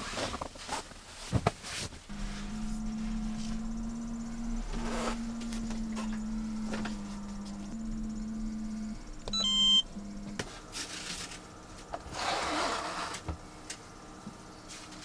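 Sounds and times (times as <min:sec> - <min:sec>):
low steady hum: 0:02.1 - 0:10.7
short electronic beep: 0:09.0 - 0:10.4.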